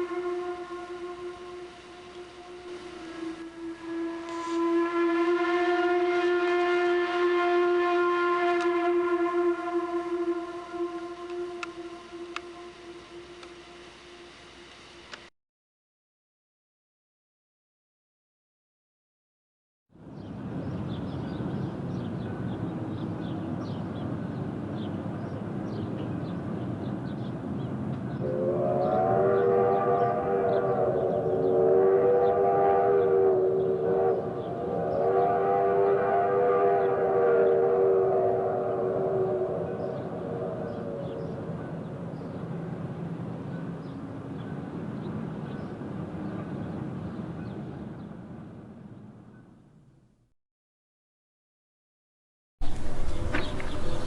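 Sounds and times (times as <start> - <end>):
train whistle: 0.0 - 15.2, 28.0 - 46.8
train rumbling on track: 20.0 - 49.4, 52.6 - 54.0
steady low rumble: 37.6 - 49.3
birds chirping: 39.5 - 42.6, 52.6 - 54.0.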